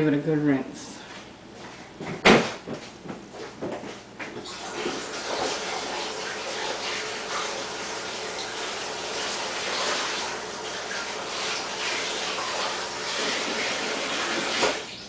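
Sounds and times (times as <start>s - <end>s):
kitchen tap running: 4.4s - 15.0s.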